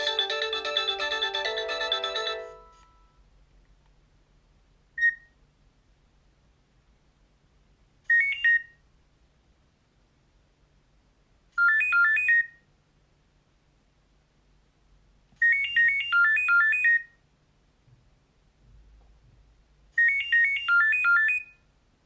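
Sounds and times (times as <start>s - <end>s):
high-pitched ringtone melody: 0.0s - 3.2s.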